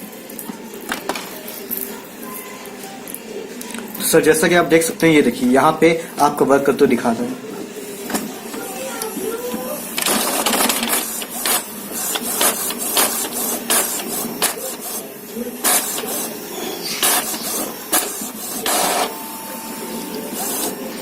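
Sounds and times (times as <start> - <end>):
inkjet printer printing: 0.0 - 21.0.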